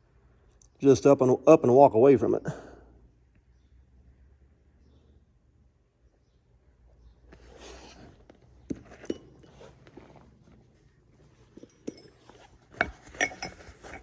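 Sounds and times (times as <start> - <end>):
scuffing and shuffling: 7.3 - 14.0.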